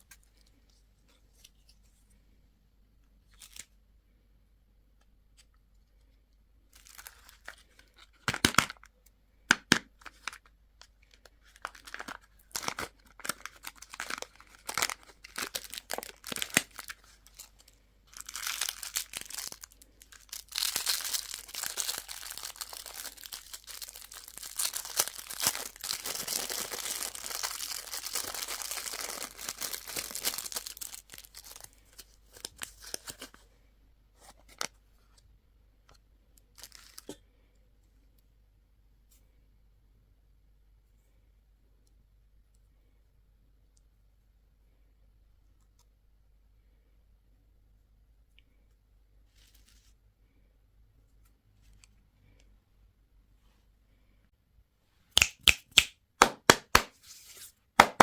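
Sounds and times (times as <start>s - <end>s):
wrapper crinkling and tearing: 6.7s - 8.9s, 10.0s - 33.4s.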